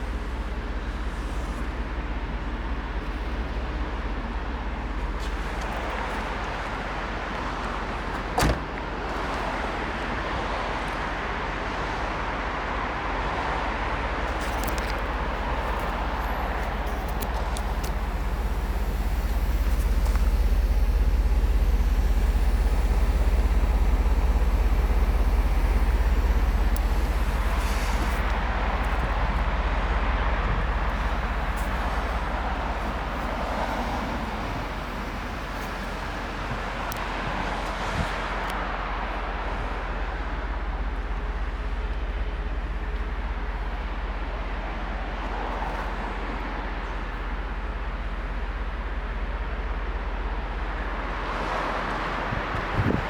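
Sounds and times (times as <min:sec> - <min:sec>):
car engine running: 0:14.2 - 0:38.5.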